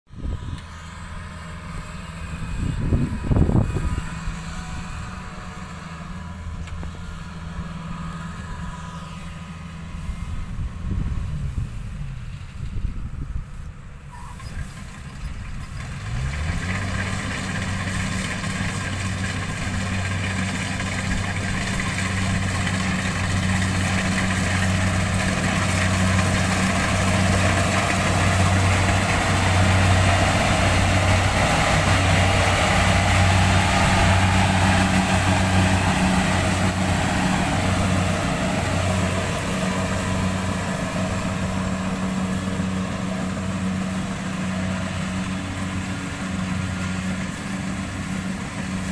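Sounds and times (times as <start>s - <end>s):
harvester engine drone: 0.1s - 48.9s
rushing machine noise: 15.6s - 48.9s.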